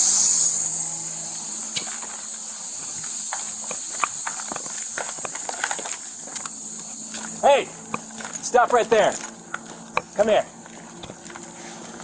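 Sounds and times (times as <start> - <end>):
steady high-pitched hiss: 0.0 - 12.0
footsteps walking: 1.7 - 12.0.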